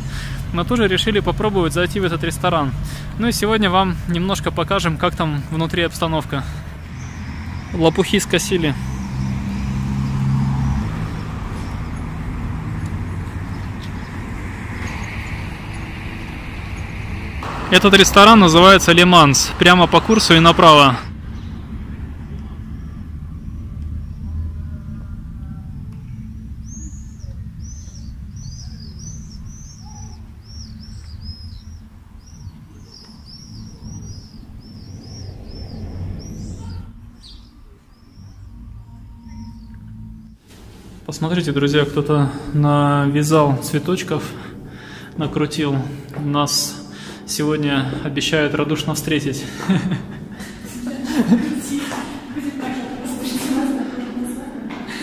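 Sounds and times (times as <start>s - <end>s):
small birds chirping: 0.0s - 18.0s, 20.1s - 40.4s
steady road noise: 0.0s - 55.0s
vehicle engine hum: 0.0s - 55.0s
low rumble: 6.4s - 40.9s.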